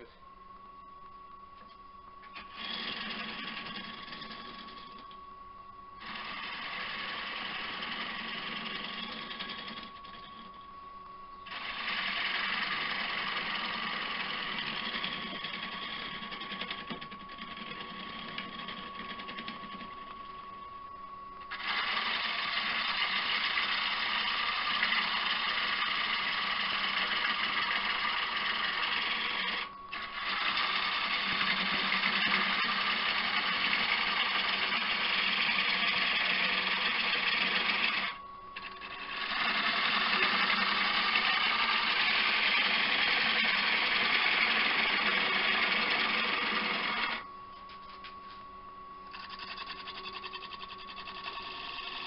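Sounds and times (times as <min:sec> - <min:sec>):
wood lathe motor whine: 0:01.6 - 0:05.3, 0:06.0 - 0:48.4, 0:49.1 - 0:52.0
turning tool hissing on wood: 0:11.5 - 0:16.3, 0:21.5 - 0:47.2.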